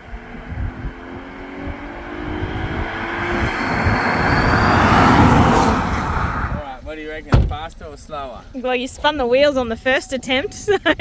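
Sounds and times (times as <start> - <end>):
car engine accelerating: 0.0 - 6.8.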